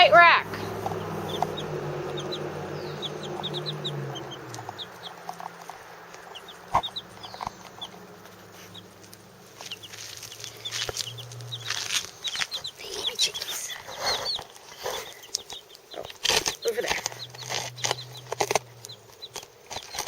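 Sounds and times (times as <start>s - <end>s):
low hum: 0.0s - 13.9s
chicks peeping: 0.0s - 20.0s.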